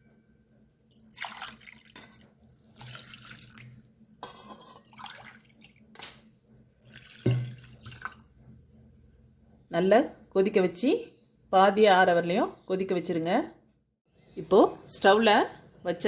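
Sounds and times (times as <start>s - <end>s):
water pouring into a pot: 1.0s - 3.8s, 4.7s - 5.7s, 6.8s - 8.3s.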